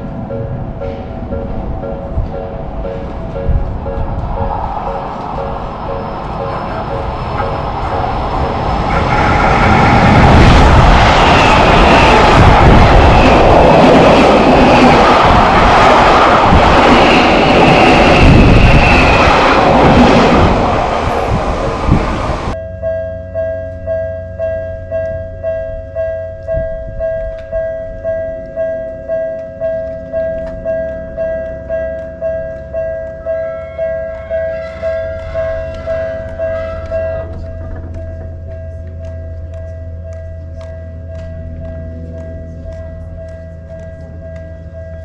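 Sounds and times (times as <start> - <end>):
train wheels rushing past: 0.0 - 22.6, 29.8 - 39.1
railroad crossing bell ringing: 0.0 - 45.0.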